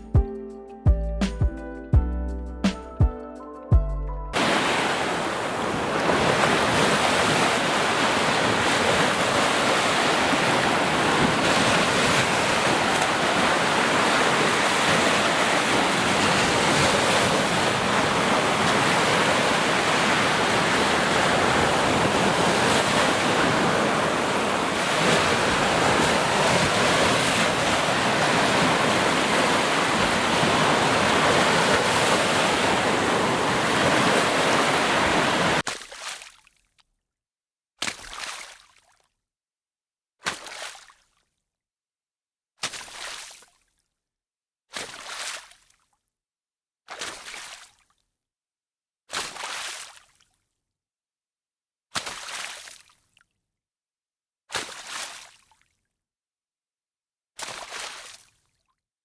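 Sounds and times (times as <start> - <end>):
ocean waves breaking: 4.4 - 35.6.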